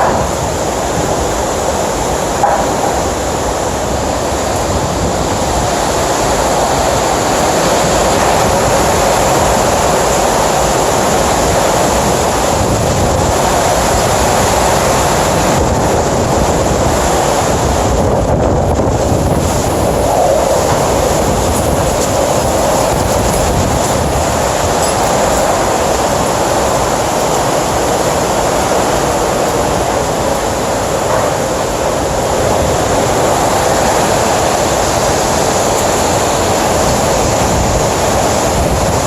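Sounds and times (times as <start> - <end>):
strong wind blowing: 0.0 - 39.0.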